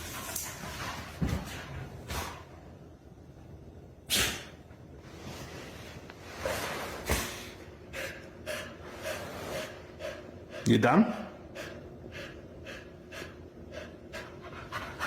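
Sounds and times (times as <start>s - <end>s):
sharp snorts of breath: 4.1s - 4.6s.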